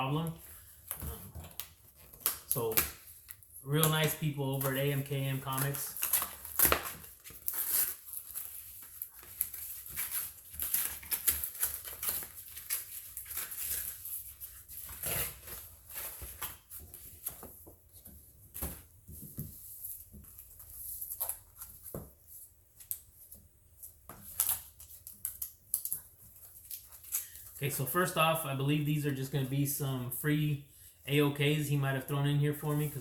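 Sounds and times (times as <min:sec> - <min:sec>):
packaging rustling and crinkling: 0:00.3 - 0:23.0.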